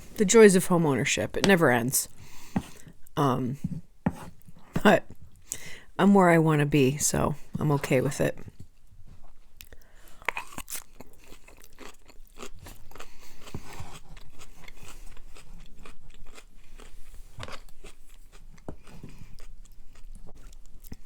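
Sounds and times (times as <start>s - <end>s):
close-up chewing: 8.7s - 21.0s.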